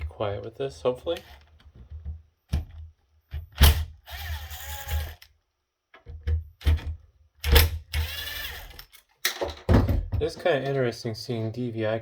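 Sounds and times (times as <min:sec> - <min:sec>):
electric drill whining: 0:04.0 - 0:05.2, 0:08.0 - 0:08.8.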